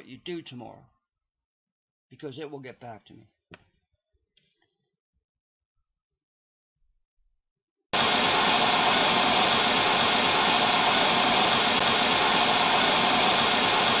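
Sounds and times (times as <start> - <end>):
static white noise hiss: 8.0 - 14.0.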